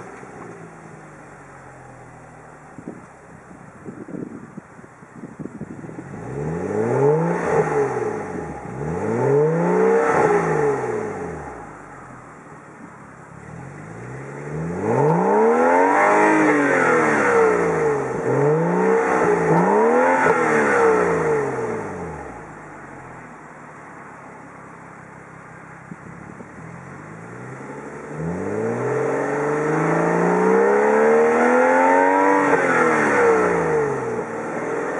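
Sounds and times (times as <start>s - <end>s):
car engine idling: 0.0s - 34.9s
car engine revving: 5.5s - 34.9s.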